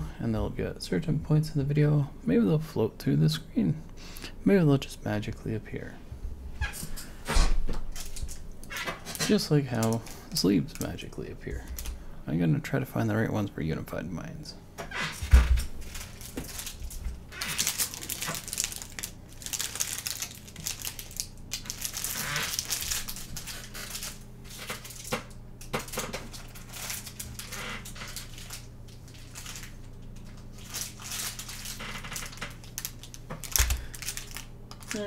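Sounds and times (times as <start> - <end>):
faint steady hum: 0.0 - 35.0
plastic sleeves crinkling: 7.9 - 12.0, 14.9 - 35.0.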